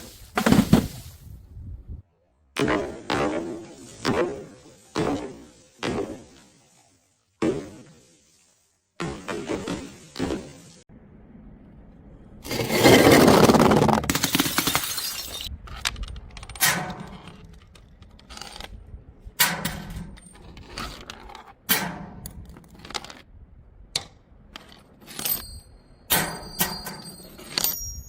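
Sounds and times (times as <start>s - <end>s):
glass bottles clinking: 14.2s - 15.5s.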